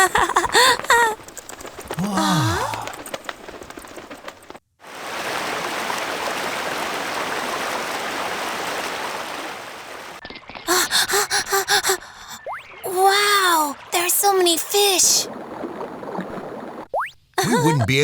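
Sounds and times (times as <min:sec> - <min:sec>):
stream flowing: 0:04.9 - 0:11.9, 0:12.8 - 0:16.9.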